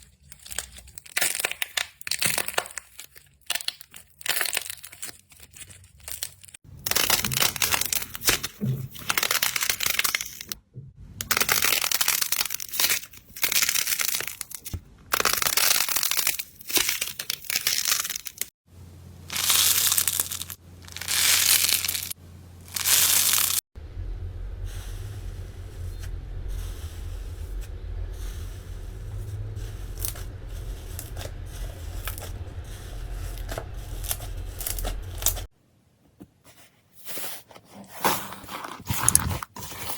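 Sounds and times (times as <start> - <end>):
slime crackling and crunching: 0.0 - 10.6, 11.2 - 18.5, 19.3 - 23.6, 24.7 - 35.5
low hum: 18.7 - 35.5.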